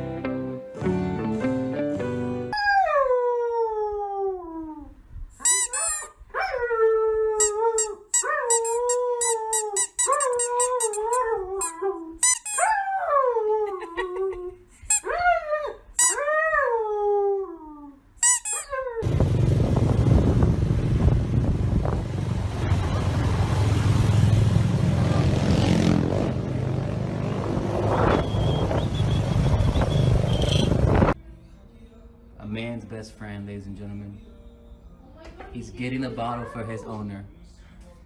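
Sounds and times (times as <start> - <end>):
dog howling and whining: 2.6 - 4.9, 5.5 - 14.3, 15.0 - 19.0
high squeaky dog yelps: 5.4 - 6.6, 7.4 - 12.9, 14.9 - 16.3, 18.2 - 19.0
steady rushing noise: 19.0 - 31.2.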